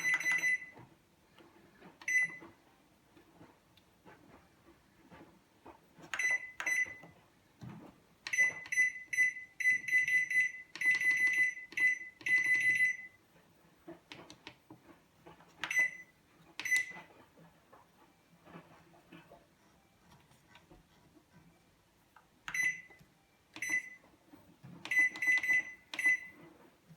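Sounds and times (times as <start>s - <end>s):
microwave control panel beeping: 0.0s - 0.9s, 2.0s - 2.6s, 6.1s - 7.2s, 8.2s - 13.3s, 15.6s - 17.1s, 22.4s - 24.1s, 24.8s - 26.5s.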